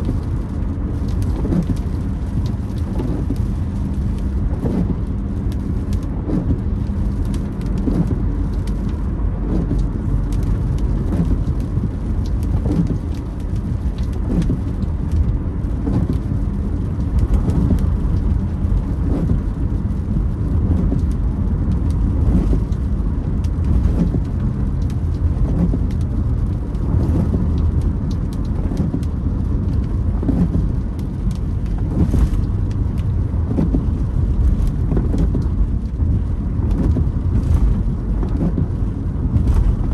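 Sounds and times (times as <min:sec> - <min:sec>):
raindrops ticking on windshield: 0:00.0 - 0:39.9
road and engine rumble: 0:00.0 - 0:39.9.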